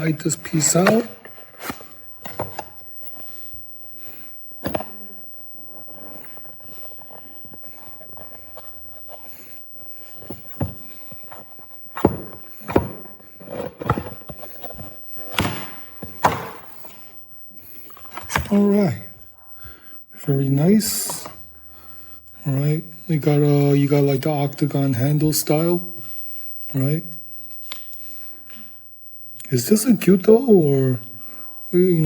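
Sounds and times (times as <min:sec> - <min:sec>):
packaging handling noise: 0:00.0 - 0:22.0
sharp knocks: 0:15.3 - 0:16.8.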